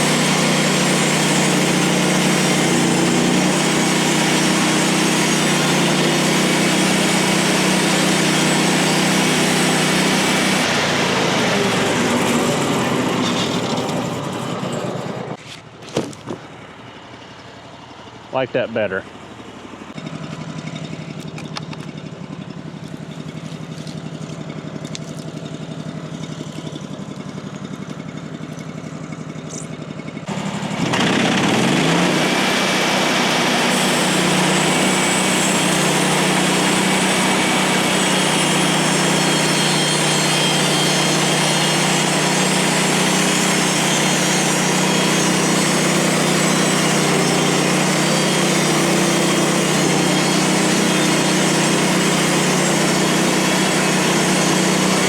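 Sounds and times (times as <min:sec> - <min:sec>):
gas engine revving up: 0:30.3 - 0:38.8.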